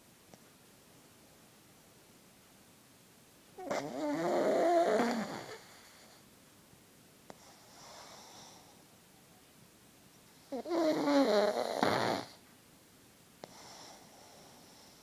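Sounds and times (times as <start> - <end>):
dog snoring: 3.6 - 6.2, 7.3 - 8.8, 10.4 - 12.4, 13.4 - 15.0.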